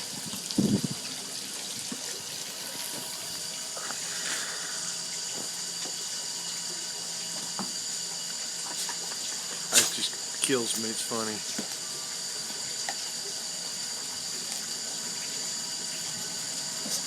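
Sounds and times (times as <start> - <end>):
fire flame hissing: 0.0 - 12.5.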